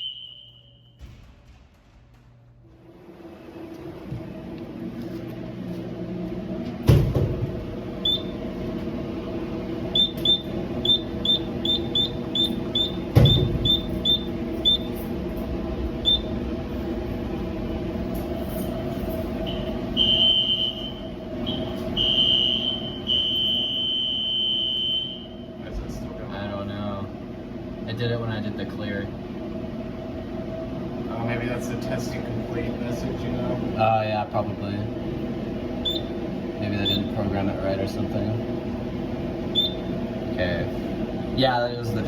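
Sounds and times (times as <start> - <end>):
alarm panel buzzer beeping: 0.0 - 1.0, 8.0 - 8.4, 9.9 - 15.0, 16.0 - 16.4, 19.4 - 25.4, 35.8 - 36.2, 36.8 - 37.1, 39.5 - 39.9
steady hum: 0.0 - 42.0.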